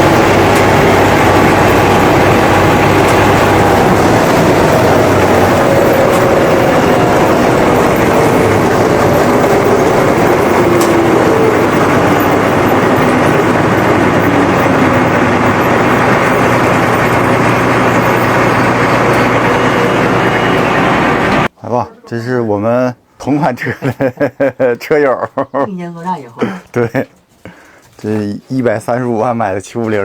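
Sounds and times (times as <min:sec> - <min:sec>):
combine harvester running: 0:00.0 - 0:21.5.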